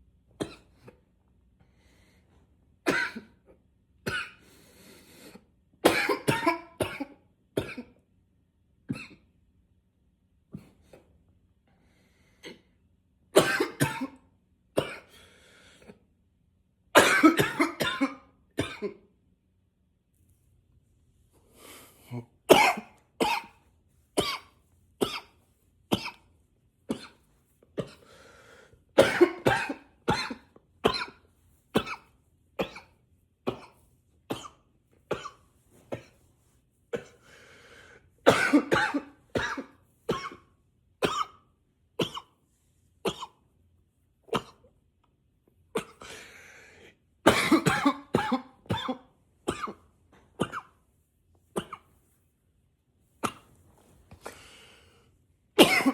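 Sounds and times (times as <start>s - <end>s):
man coughing: 2.9s - 3.4s, 5.8s - 8.0s, 13.4s - 14.2s, 17.0s - 19.0s, 22.0s - 23.6s, 29.0s - 31.2s, 38.3s - 40.4s, 47.3s - 49.8s, 55.6s - 55.9s
breath in: 28.0s - 28.8s, 37.1s - 38.1s, 46.0s - 47.0s, 54.1s - 55.1s.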